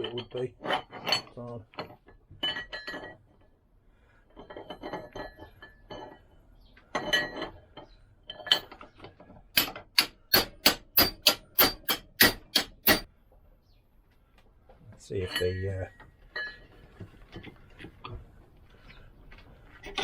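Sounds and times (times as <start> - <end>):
metal parts clinking: 0.0 - 3.3
hammer tapping metal: 9.6 - 13.1.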